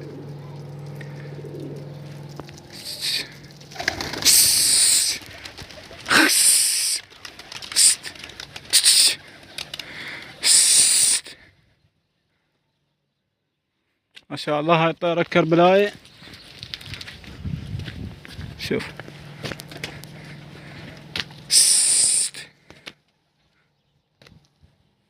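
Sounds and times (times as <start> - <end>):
pigeon wings flapping: 0.0 - 11.1, 16.0 - 18.3, 19.4 - 23.0.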